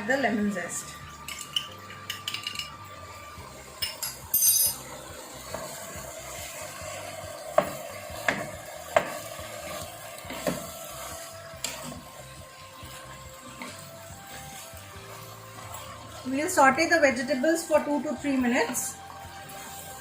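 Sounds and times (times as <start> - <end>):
utensil scraping in frying pan: 4.2 - 20.0.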